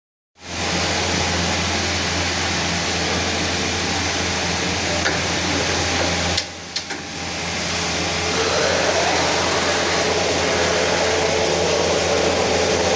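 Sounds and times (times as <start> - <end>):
machine humming with hiss: 7.2 - 12.9.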